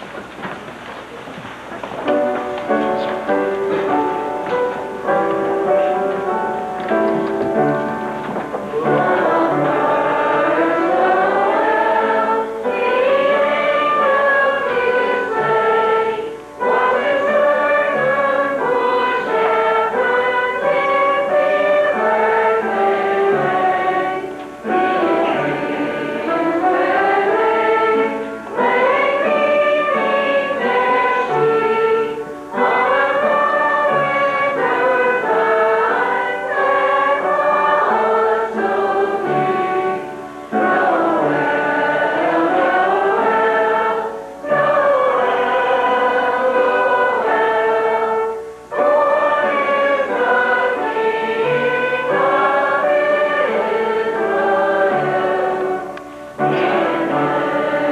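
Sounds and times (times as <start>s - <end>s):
congregation singing a hymn: 2.0s - 57.9s.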